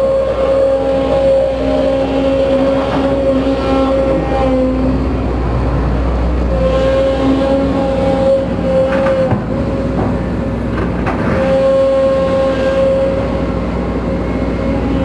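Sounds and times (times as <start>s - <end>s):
diesel engine rumble: 0.0s - 11.9s
hydraulic pump whine: 0.0s - 15.0s.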